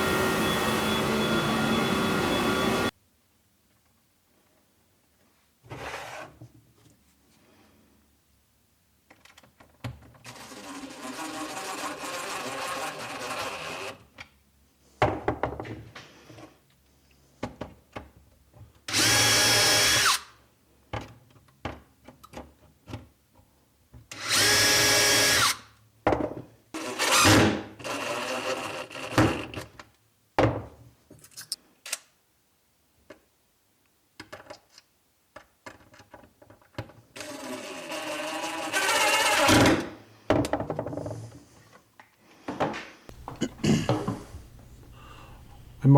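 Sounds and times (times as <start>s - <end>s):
power drill whining: 0.0s - 2.9s, 10.3s - 14.0s, 18.9s - 20.3s, 24.2s - 25.6s, 26.8s - 29.5s, 37.2s - 39.9s
clicks and knocks of parts handled: 20.9s - 23.0s, 31.1s - 32.1s.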